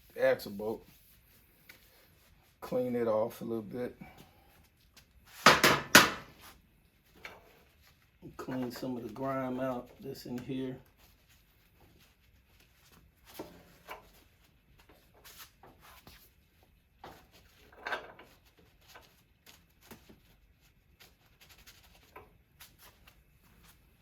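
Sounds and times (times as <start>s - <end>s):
hand rubbing and scuffing: 0.0s - 3.2s, 4.0s - 5.6s, 6.2s - 24.0s
scrape: 7.4s - 16.4s.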